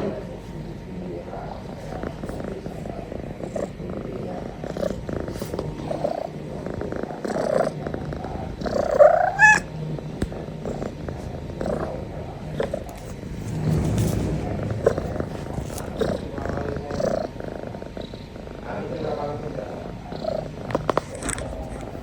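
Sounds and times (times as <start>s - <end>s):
kitten purring: 0.0s - 22.0s
kitten squeak: 8.9s - 9.7s.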